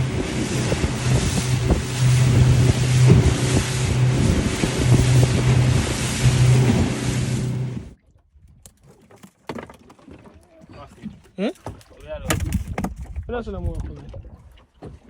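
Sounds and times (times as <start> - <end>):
motorboat engine droning: 0.0 - 8.0
wind on microphone: 0.0 - 8.6.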